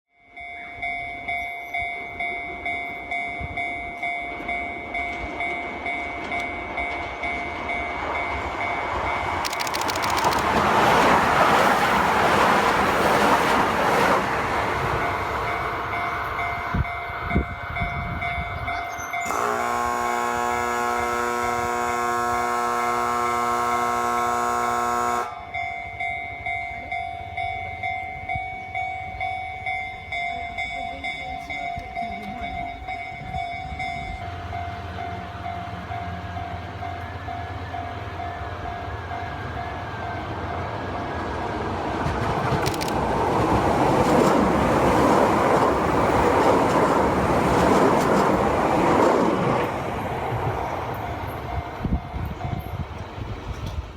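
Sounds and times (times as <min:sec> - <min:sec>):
level-crossing warning bell: 0:00.1 - 0:42.0, 0:42.7 - 0:53.9
train running noise: 0:00.3 - 0:53.9
loud steady buzzer: 0:19.2 - 0:25.4.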